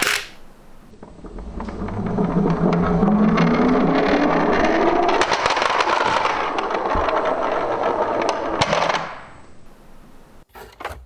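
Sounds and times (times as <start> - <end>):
toy car wheels rattling: 0.0 - 0.9.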